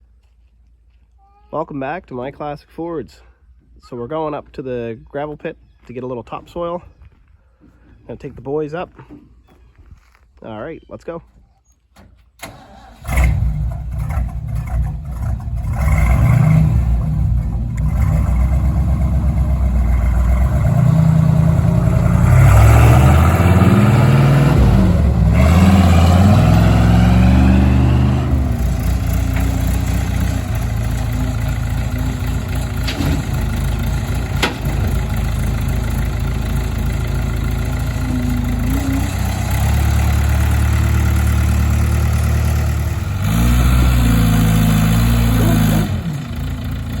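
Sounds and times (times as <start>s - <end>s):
truck engine running: 13.2s - 47.0s.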